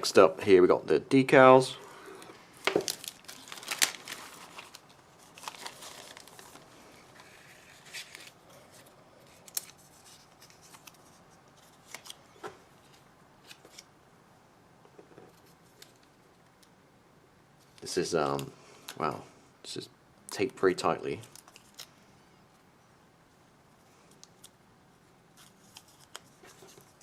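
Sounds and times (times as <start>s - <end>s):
plastic and paper rustling: 2.6s - 12.2s.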